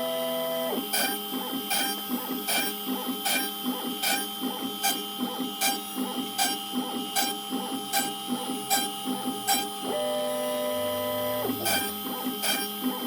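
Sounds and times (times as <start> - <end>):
stepper motor whine: 9.5 - 12.0
stepper motor clicks and chatter: 11.2 - 13.0.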